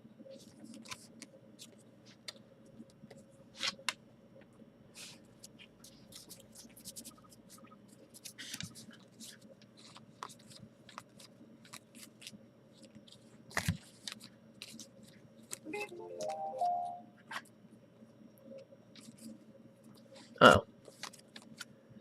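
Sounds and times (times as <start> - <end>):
short pitched tone: 15.7 - 17.2.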